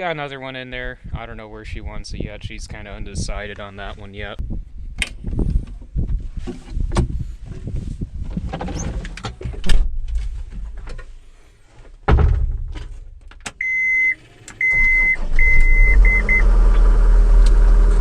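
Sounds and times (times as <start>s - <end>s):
heavy thud: 12.0s - 13.3s
diesel engine cranking and running: 13.2s - 18.0s
electronic warning beeps: 13.6s - 16.5s.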